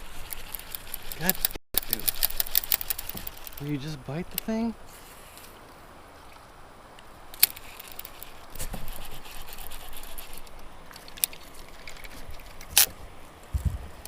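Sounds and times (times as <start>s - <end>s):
fish wriggling and gear scraping: 0.0s - 5.6s, 7.3s - 12.9s.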